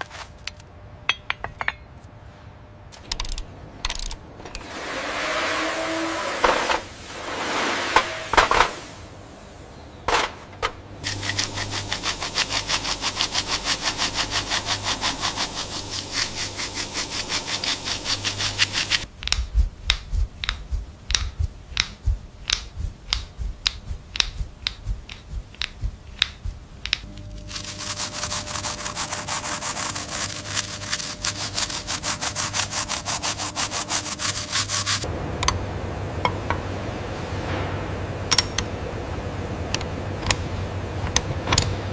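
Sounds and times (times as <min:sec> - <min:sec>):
hand sanding strokes: 0:04.6 - 0:08.9, 0:11.0 - 0:35.1.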